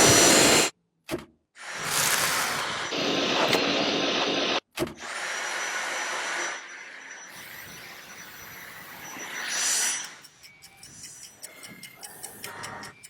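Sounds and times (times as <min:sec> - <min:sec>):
vacuum cleaner running: 0:00.0 - 0:00.7, 0:01.6 - 0:07.2.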